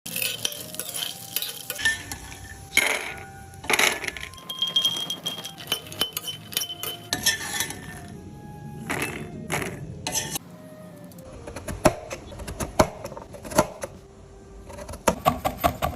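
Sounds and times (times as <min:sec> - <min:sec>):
metal utensils clinking on bowls: 0:00.1 - 0:08.1, 0:08.9 - 0:10.4.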